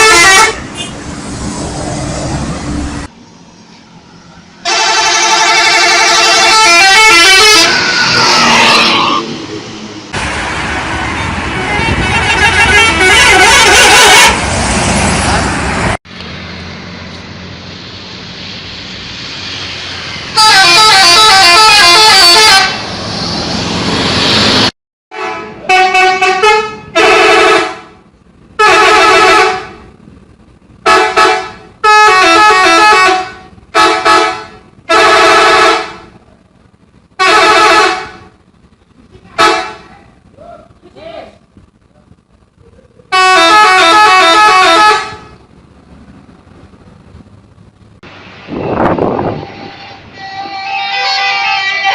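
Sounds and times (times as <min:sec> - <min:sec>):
bus musical horn: 0:00.0 - 0:01.0, 0:04.6 - 0:09.4, 0:10.7 - 0:14.4, 0:20.3 - 0:23.0, 0:25.1 - 0:28.0, 0:28.6 - 0:29.9, 0:30.8 - 0:36.2, 0:37.2 - 0:38.3, 0:39.4 - 0:39.9, 0:43.1 - 0:45.4, 0:48.5 - 0:51.9
bus engine and road noise: 0:00.0 - 0:51.9.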